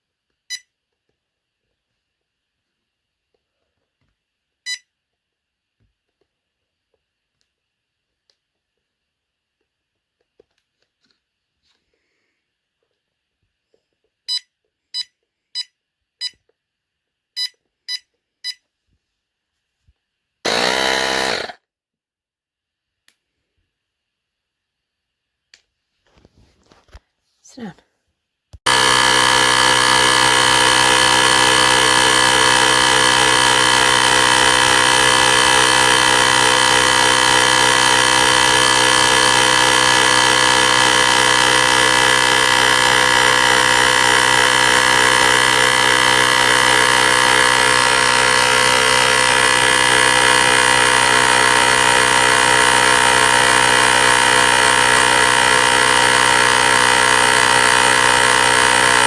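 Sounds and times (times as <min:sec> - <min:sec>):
portable air compressor running: 0:20.5 - 0:21.6, 0:28.7 - 0:59.0.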